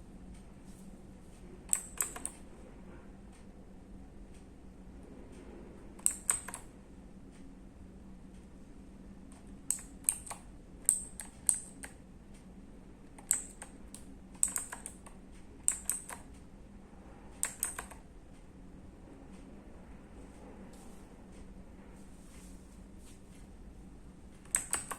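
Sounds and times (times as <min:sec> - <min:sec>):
mechanical keyboard keys clacking: 0:01.7 - 0:02.4, 0:06.0 - 0:06.7, 0:09.7 - 0:12.0, 0:13.2 - 0:16.3, 0:17.4 - 0:18.0, 0:24.4 - 0:24.9.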